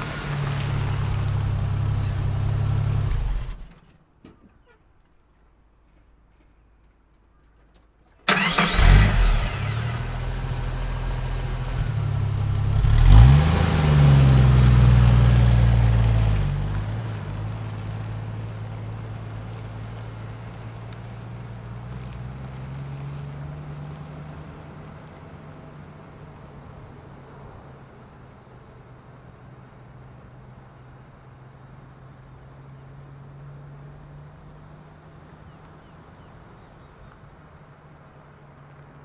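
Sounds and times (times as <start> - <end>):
car engine starting and revving: 0.0 - 3.9, 8.3 - 26.2
car driving off: 0.0 - 4.0, 8.3 - 38.9.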